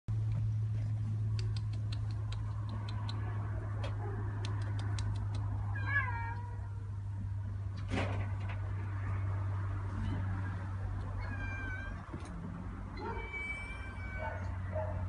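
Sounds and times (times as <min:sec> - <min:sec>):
cat meowing: 0:05.7 - 0:06.8, 0:11.2 - 0:12.2, 0:13.0 - 0:14.6.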